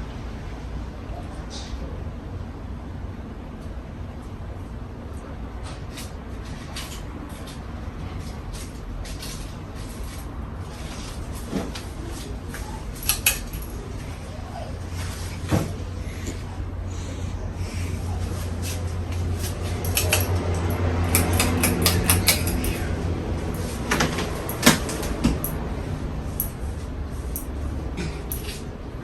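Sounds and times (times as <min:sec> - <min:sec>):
ceiling fan motor hum: 0:00.0 - 0:29.0
sharp clicks and knocks: 0:19.4 - 0:25.6.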